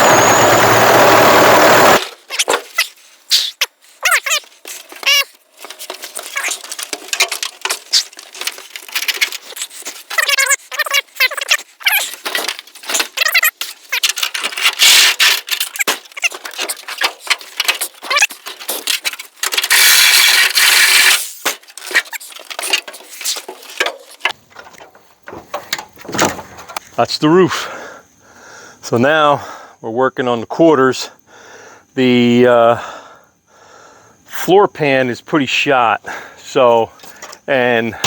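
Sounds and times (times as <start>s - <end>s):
power tool cutting sheet steel: 0.0s - 2.0s, 19.7s - 21.3s.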